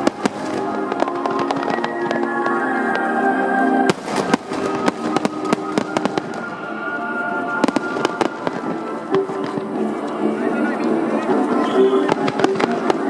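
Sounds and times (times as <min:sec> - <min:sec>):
fireworks bangs: 0:00.0 - 0:03.2, 0:03.8 - 0:09.9, 0:11.9 - 0:13.0
fireworks crackling: 0:00.0 - 0:13.0
music over loudspeakers: 0:00.0 - 0:13.0.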